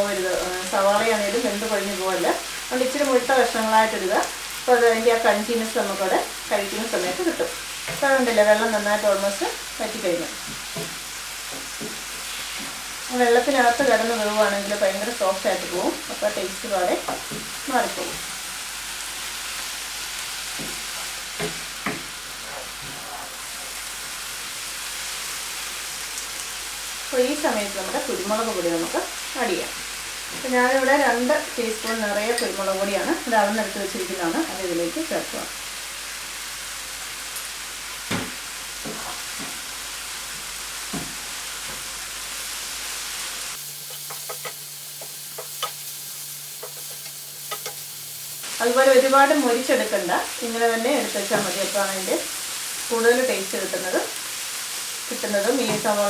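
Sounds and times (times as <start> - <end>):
mushrooms and onion sizzling in pan: 0.0 - 56.0
spatula knocking and scraping pan: 10.4 - 12.9, 17.0 - 18.4, 20.5 - 23.0, 40.3 - 41.9, 43.7 - 45.9, 46.5 - 47.9, 55.5 - 56.0.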